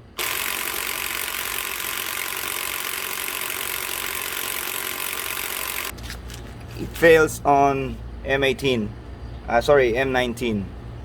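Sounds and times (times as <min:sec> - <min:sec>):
impact wrench hammering: 0:00.2 - 0:05.9.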